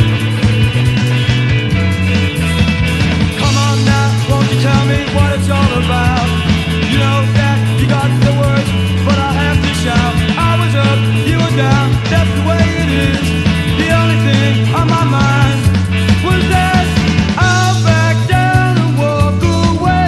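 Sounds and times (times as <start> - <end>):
lead melody with pitch bends: 0.0 - 6.8
rock band playing: 0.0 - 20.0.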